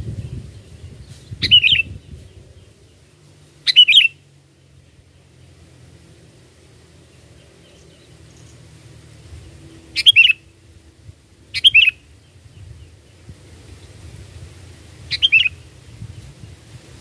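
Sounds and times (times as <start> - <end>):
bulbul chirping calls: 1.3 - 2.2, 3.6 - 4.3, 10.0 - 10.5, 11.5 - 12.7, 15.1 - 15.7.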